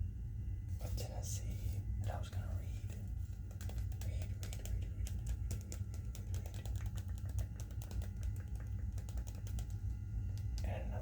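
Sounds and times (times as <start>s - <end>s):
steady low hum: 0.0s - 11.0s
fingers tapping on hard surface: 3.4s - 9.8s.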